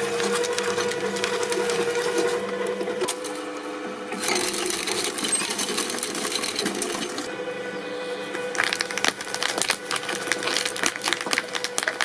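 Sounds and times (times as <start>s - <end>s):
hydraulic press humming: 0.0s - 12.0s
object crackling and snapping: 8.5s - 12.0s.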